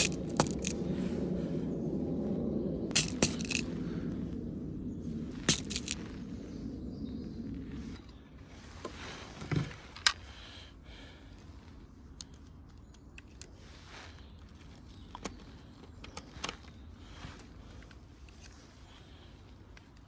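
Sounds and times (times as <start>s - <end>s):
small sharp clicks and knocks: 12.2s - 13.6s.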